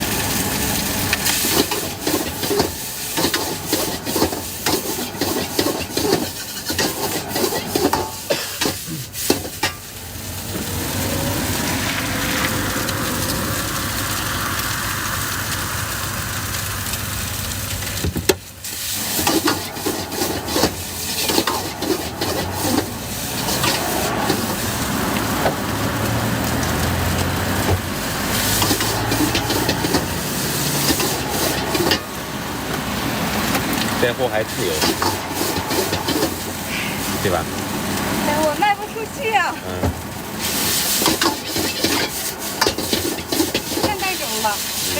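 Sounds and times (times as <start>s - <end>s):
food sizzling: 0.0s - 44.9s
metal spatula scraping a pan: 1.2s - 13.0s, 18.8s - 24.8s, 28.3s - 32.2s, 34.4s - 37.2s, 40.4s - 44.9s.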